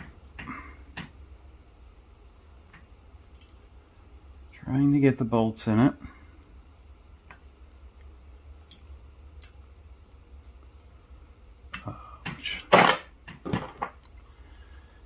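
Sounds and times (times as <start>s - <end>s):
metal screws and tools clinking: 12.4s - 13.8s.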